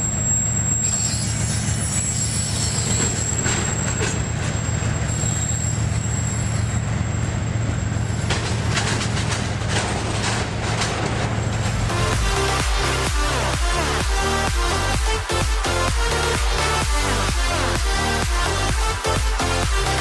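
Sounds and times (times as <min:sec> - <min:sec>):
high wheel squeal: 0:00.0 - 0:20.0
train rumbling on rails: 0:00.0 - 0:20.0
sharp clatters: 0:08.2 - 0:12.7.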